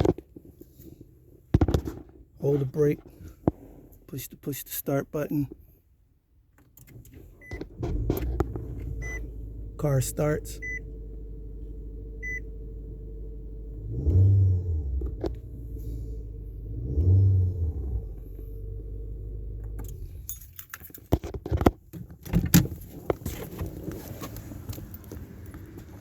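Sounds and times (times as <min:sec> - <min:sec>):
car engine idling and revving: 0:00.0 - 0:26.0
keys jingling: 0:19.8 - 0:21.2, 0:24.2 - 0:25.8.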